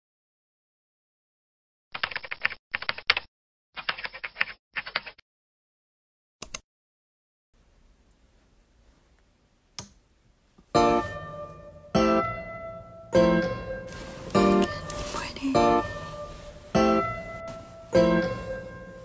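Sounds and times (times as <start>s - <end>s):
keyboard typing: 2.0s - 5.2s
single click: 6.4s - 6.6s
music: 10.7s - 19.0s.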